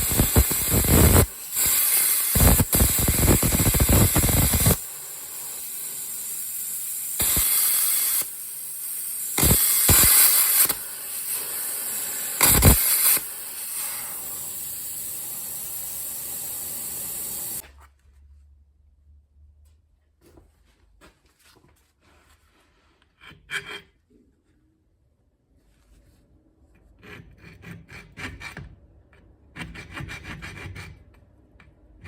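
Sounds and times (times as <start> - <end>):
plasma cutter hissing bursts: 0.0 - 17.6
steady hiss of air: 0.0 - 17.6.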